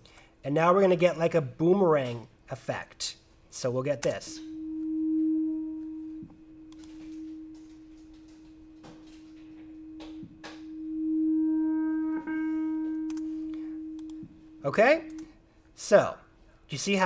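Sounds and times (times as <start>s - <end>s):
looped sustained note: 4.2s - 15.4s.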